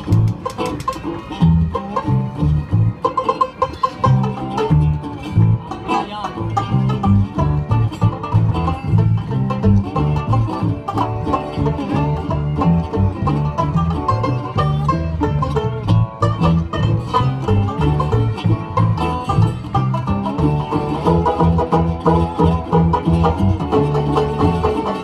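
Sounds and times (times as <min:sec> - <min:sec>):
picked banjo notes: 0:00.0 - 0:25.0
bass line: 0:01.1 - 0:25.0.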